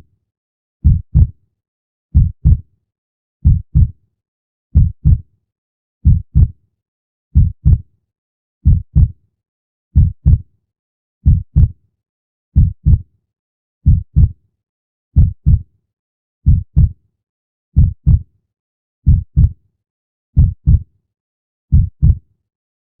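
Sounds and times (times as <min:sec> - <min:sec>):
heartbeat thumps: 0:00.8 - 0:01.3, 0:02.2 - 0:02.6, 0:03.4 - 0:03.9, 0:04.8 - 0:05.2, 0:06.0 - 0:06.5, 0:07.4 - 0:07.8, 0:08.6 - 0:09.1, 0:10.0 - 0:10.4, 0:11.2 - 0:11.7, 0:12.6 - 0:13.0, 0:13.9 - 0:14.3, 0:15.2 - 0:15.6, 0:16.5 - 0:16.9, 0:17.8 - 0:18.2, 0:19.1 - 0:19.5, 0:20.4 - 0:20.8, 0:21.7 - 0:22.2.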